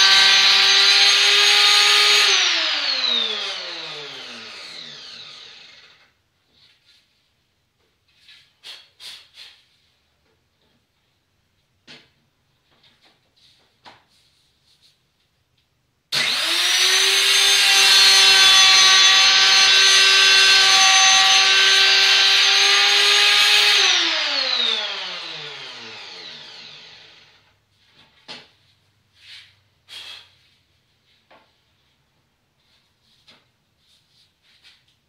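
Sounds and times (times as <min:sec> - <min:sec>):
router running: 0:00.0 - 0:06.0, 0:16.2 - 0:27.4
router spinning down whine: 0:00.0 - 0:06.1, 0:16.1 - 0:27.4.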